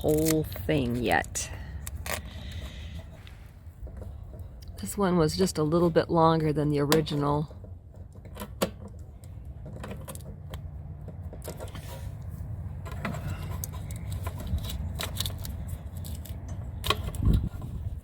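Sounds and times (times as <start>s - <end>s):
steady low rumble: 0.0s - 8.3s.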